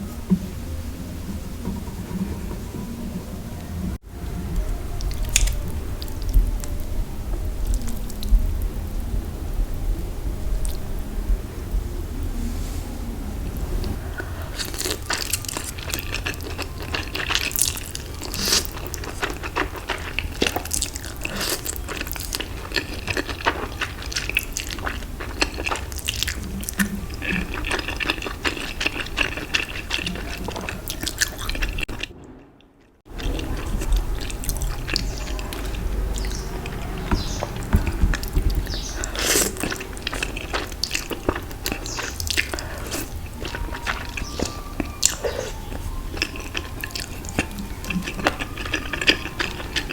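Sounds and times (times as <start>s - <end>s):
person crunching and chewing: 5.0s - 6.8s, 13.8s - 32.1s, 33.1s - 49.9s.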